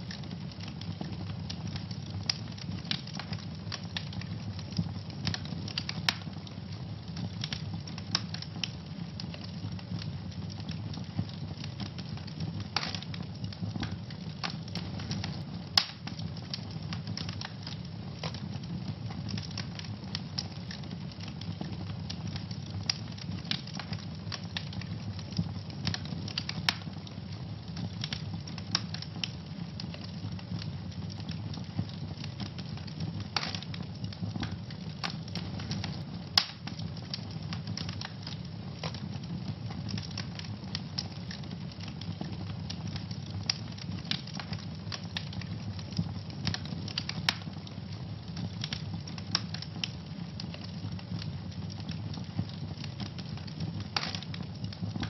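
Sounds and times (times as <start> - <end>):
wood fire crackling and popping: 0.0 - 55.0.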